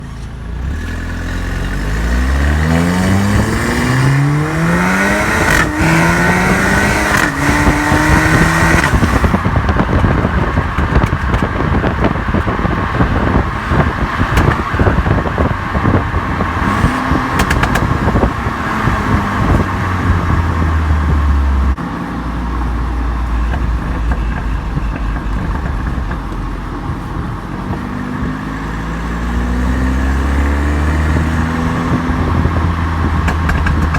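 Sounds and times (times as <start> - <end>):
car exhaust accelerating: 0.0 - 33.9
exhaust popping and crackling: 0.0 - 33.9.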